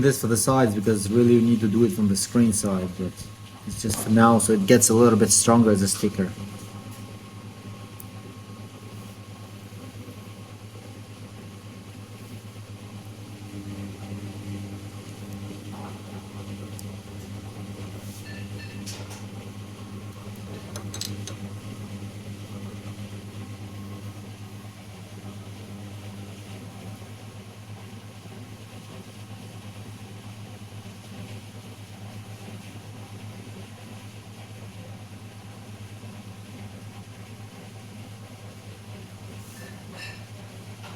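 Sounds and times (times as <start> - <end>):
low machine hum: 0.0 - 40.9.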